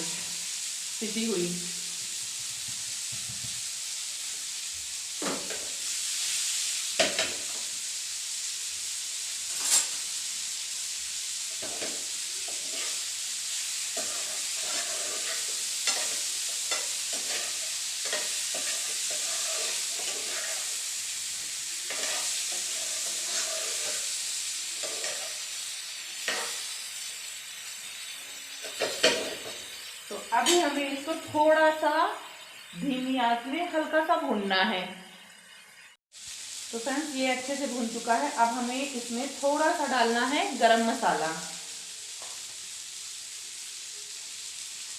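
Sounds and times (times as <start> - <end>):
food sizzling in oil: 0.0 - 44.9
spoon scraping a pan: 9.5 - 10.1, 11.5 - 21.0, 21.8 - 27.3, 27.9 - 30.8.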